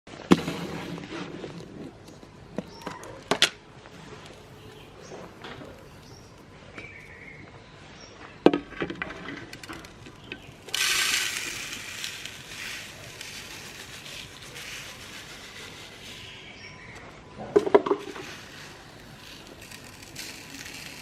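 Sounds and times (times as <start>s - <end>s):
meat grinder crackling and grinding: 9.5s - 16.4s, 18.0s - 21.0s.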